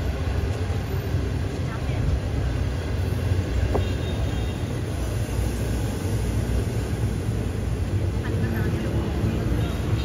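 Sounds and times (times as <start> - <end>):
busy street noise: 0.0 - 10.0.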